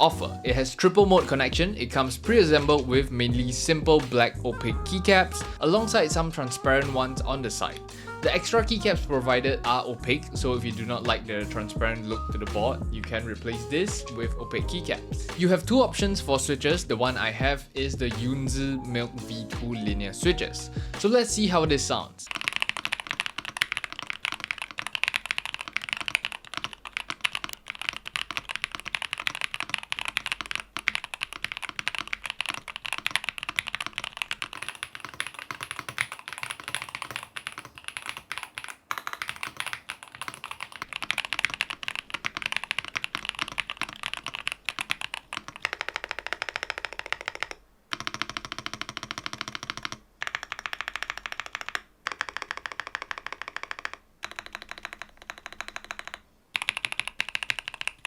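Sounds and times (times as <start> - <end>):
keyboard typing: 22.2 - 58.0.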